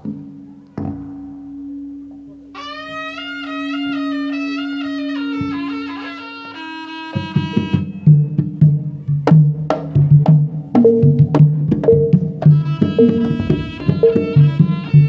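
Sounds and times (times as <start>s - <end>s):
drum strikes: 0.0s - 5.9s, 7.2s - 15.0s
long-held low tone: 0.0s - 6.6s, 13.0s - 15.0s
reedy shawm melody: 0.0s - 15.0s.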